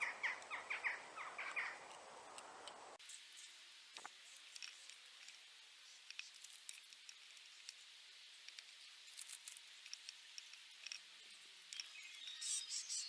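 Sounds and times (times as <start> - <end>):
metal chain clicking: 8.5 - 12.0.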